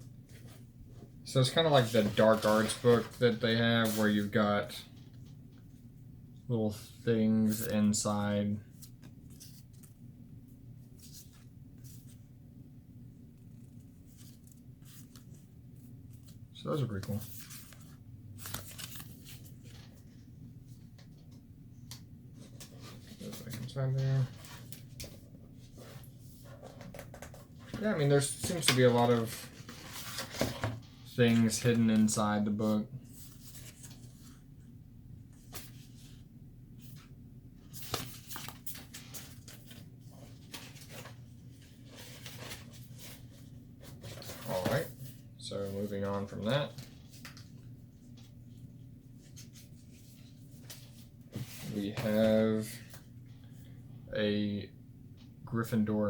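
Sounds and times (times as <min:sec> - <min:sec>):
low steady hum: 0:00.0 - 0:56.0
paper rustling: 0:01.5 - 0:04.3, 0:08.6 - 0:10.0, 0:13.4 - 0:20.2, 0:22.4 - 0:34.4, 0:37.7 - 0:48.4.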